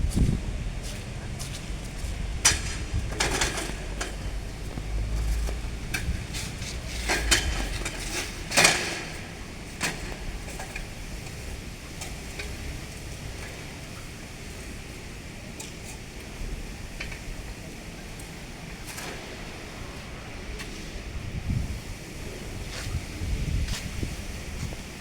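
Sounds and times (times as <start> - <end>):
low rumble: 0.0 - 6.7.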